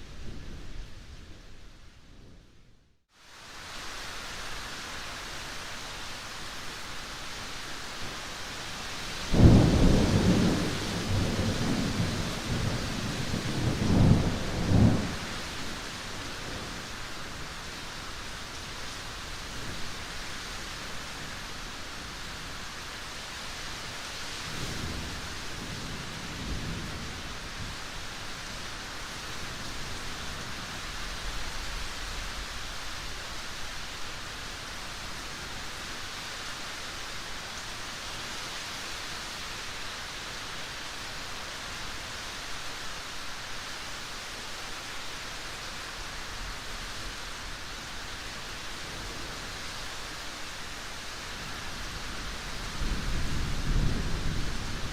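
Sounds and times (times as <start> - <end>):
steady rain falling: 0.0 - 54.9.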